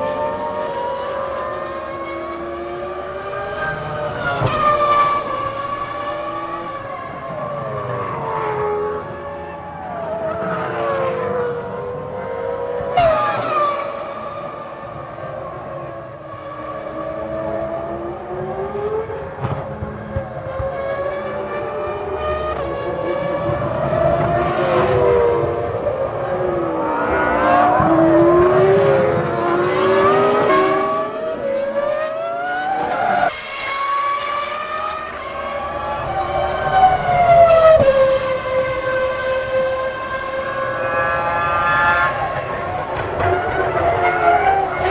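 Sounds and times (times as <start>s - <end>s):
racing cars passing at high revs: 0.0s - 44.9s.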